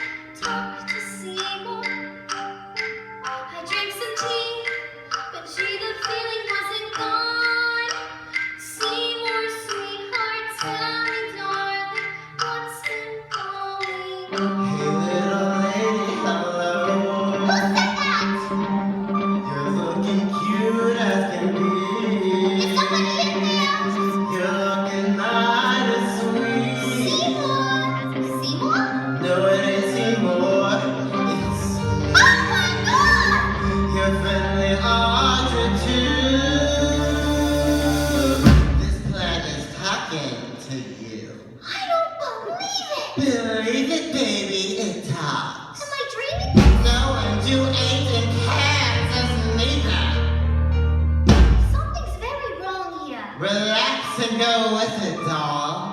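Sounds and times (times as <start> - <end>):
woman singing: 0.0 - 2.4, 3.4 - 18.4, 19.4 - 38.0
instrumental accompaniment: 0.0 - 40.0, 46.4 - 53.2.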